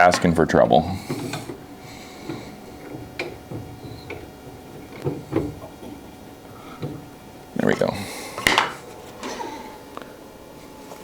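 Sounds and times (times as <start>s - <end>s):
clicks and knocks at table saw: 1.0s - 9.4s.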